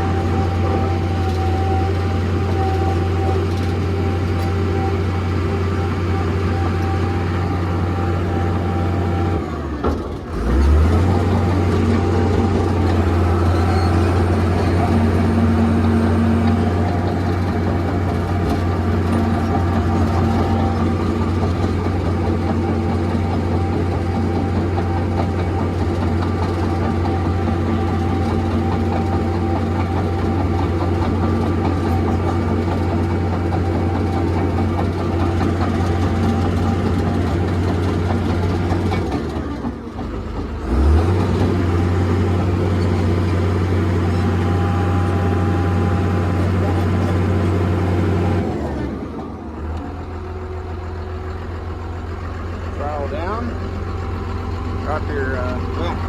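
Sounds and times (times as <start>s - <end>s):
bulldozer diesel engine running: 0.0s - 56.0s.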